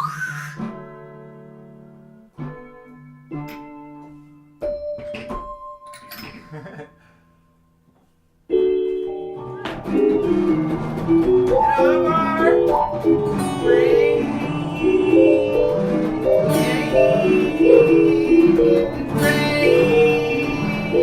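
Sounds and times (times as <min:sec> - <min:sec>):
held keyboard chord: 0:08.5 - 0:21.0
band playing instrumental music: 0:09.7 - 0:21.0.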